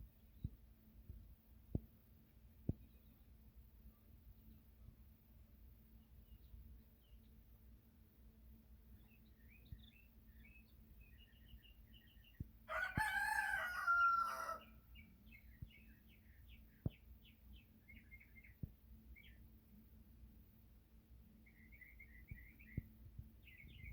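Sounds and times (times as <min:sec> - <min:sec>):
small birds chirping: 0:00.0 - 0:05.1, 0:05.9 - 0:07.8, 0:08.8 - 0:19.9, 0:21.1 - 0:23.9
rooster crowing: 0:12.7 - 0:14.8.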